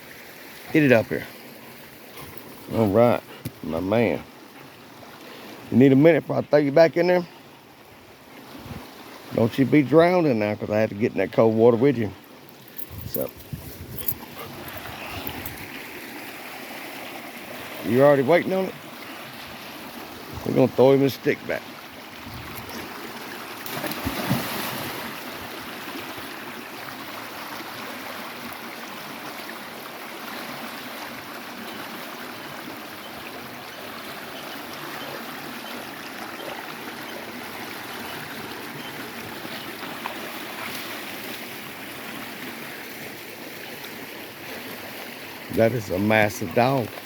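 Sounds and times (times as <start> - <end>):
flowing creek water: 0.0 - 47.0.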